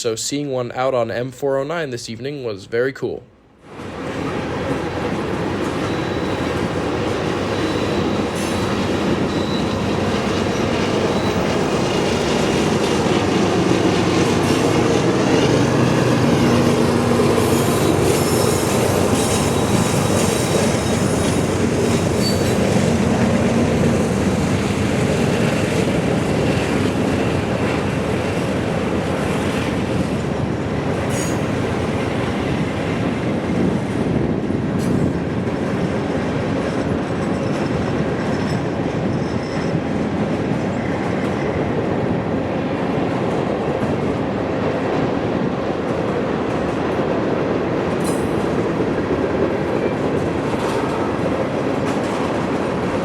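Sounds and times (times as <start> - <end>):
freight train cars rolling past: 3.6 - 53.0
high wheel squeal: 5.5 - 12.2, 17.3 - 22.8, 37.3 - 39.8.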